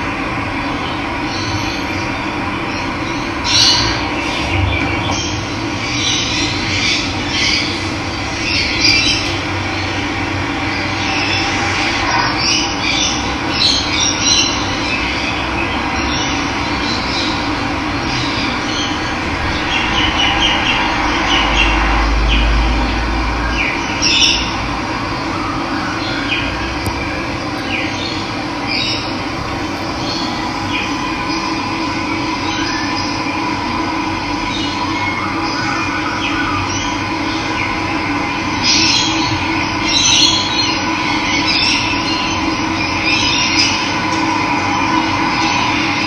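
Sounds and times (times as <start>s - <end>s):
low rumble: 15.4s - 25.6s, 26.4s - 34.5s
birds chirping: 26.0s - 33.3s.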